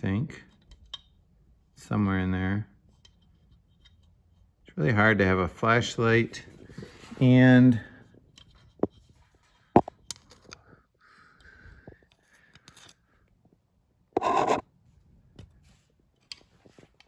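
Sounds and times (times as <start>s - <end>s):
screwdriver scraping metal: 14.2s - 14.6s.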